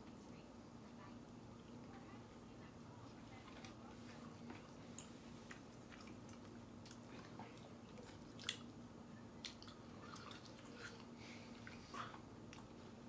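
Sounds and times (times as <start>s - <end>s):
low steady hum: 0.0s - 13.0s
people chewing: 3.4s - 13.0s.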